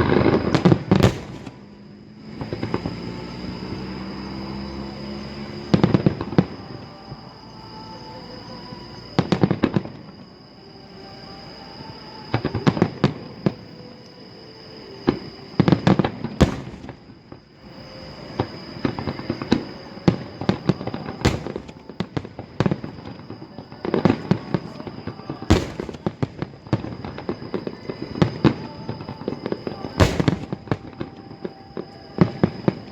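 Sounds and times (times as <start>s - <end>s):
fireworks popping and crackling: 0.0s - 1.8s, 15.1s - 17.4s, 18.4s - 32.9s
loud firework bangs: 0.0s - 2.8s, 15.6s - 17.4s, 18.5s - 23.2s, 25.4s - 27.4s, 29.8s - 31.2s.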